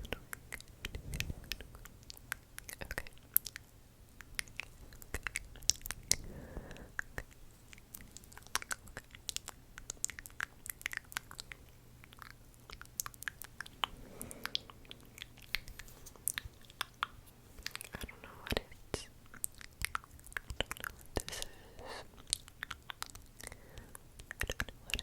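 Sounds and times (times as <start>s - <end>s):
wet mouth clicks and smacks: 0.1s - 6.2s, 7.0s - 21.5s, 22.2s - 23.6s, 24.2s - 25.0s
soft breathy sound: 5.8s - 8.6s, 13.5s - 19.2s, 21.2s - 22.2s, 23.4s - 25.0s.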